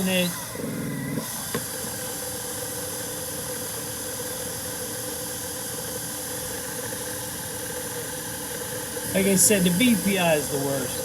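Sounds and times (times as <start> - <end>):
drill press motor humming: 0.0 - 3.6.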